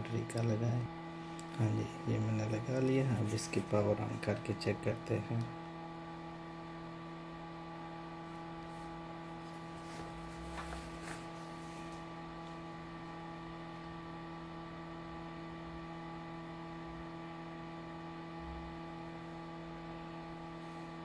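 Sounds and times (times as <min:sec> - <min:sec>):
electrical mains hum: 0:00.0 - 0:21.0.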